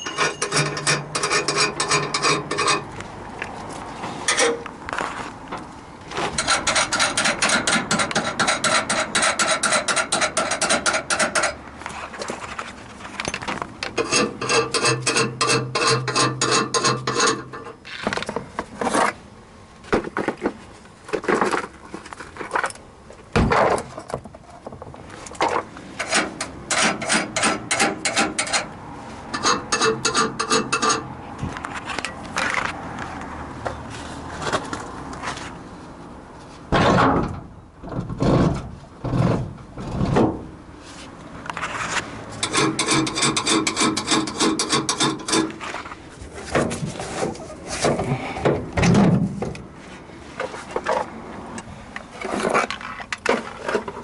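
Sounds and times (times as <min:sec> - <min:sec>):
tools knocking and scraping: 0:00.0 - 0:03.0, 0:04.0 - 0:19.2, 0:23.4 - 0:28.7, 0:29.3 - 0:32.8, 0:41.5 - 0:49.6.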